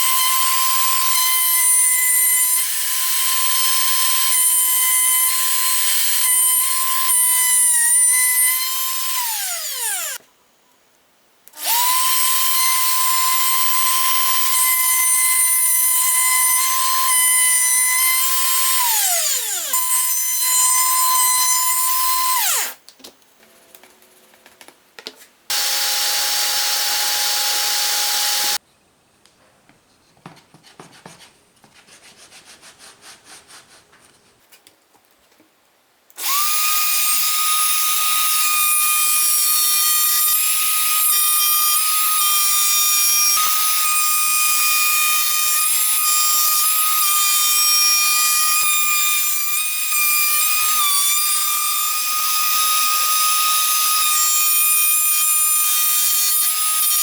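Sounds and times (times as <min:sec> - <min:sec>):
electric power tool whining: 0:25.5 - 0:28.6, 0:36.2 - 0:57.0.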